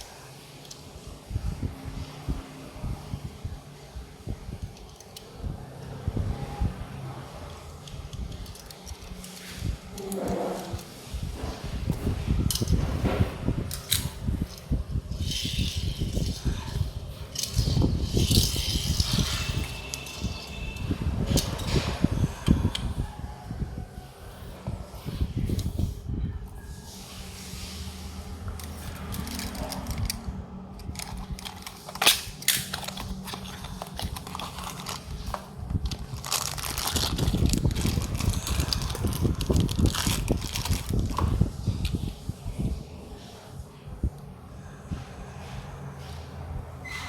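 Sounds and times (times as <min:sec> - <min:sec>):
cardboard boxes and toy car handled: 0:24.6 - 0:42.0
packaging rustling and crinkling: 0:26.9 - 0:42.0.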